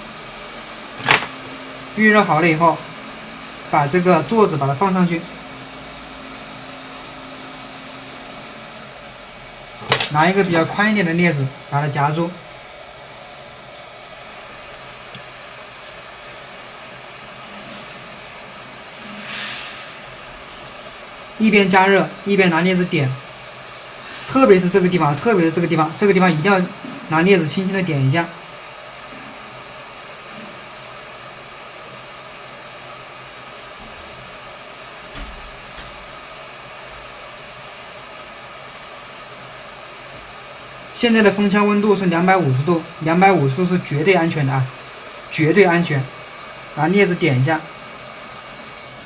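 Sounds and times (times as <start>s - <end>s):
hot air station hissing: 0.0s - 49.0s
breathy rush of air: 19.0s - 20.2s.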